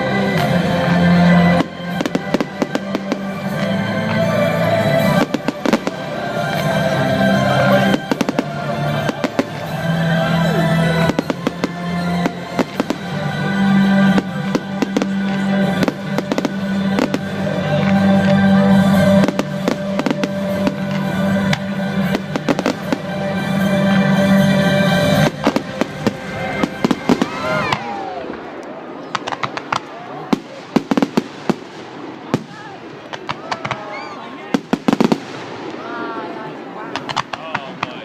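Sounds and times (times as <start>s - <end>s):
loud music with held notes: 0.0s - 28.2s
fireworks bangs: 0.2s - 38.0s.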